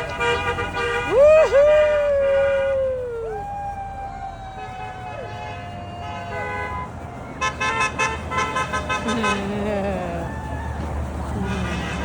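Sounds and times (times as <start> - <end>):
car horns honking: 0.0 - 2.8, 4.6 - 9.7, 11.3 - 12.0
long wailing tones: 1.0 - 7.5, 9.1 - 12.0.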